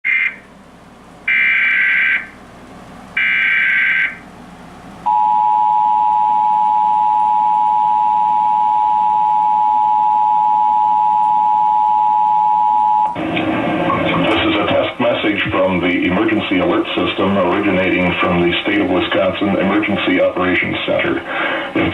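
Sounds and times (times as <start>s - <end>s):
harsh two-tone alert signal: 5.1s - 13.1s.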